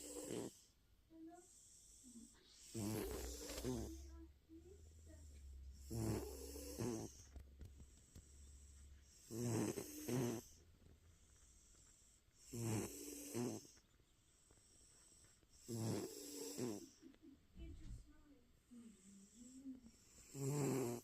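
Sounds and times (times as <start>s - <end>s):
cat snoring: 0.0s - 13.8s, 14.6s - 17.0s, 18.8s - 21.0s.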